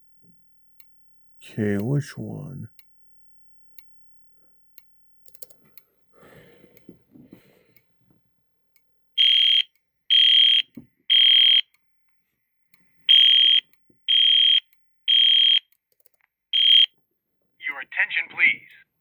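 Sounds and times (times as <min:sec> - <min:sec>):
fire alarm high beeps: 0:09.2 - 0:11.7, 0:13.1 - 0:15.7, 0:16.6 - 0:16.9.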